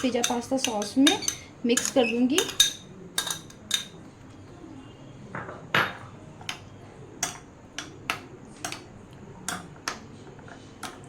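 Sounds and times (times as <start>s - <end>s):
spoon scraping a bowl: 0.0s - 3.9s.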